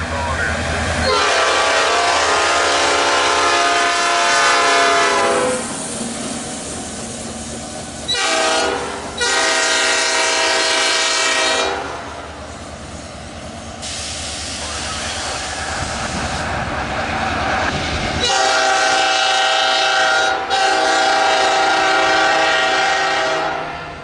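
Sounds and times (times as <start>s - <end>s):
train running noise: 0.0s - 24.0s
locomotive horn blasts: 1.0s - 5.6s, 8.1s - 12.0s, 18.2s - 23.8s.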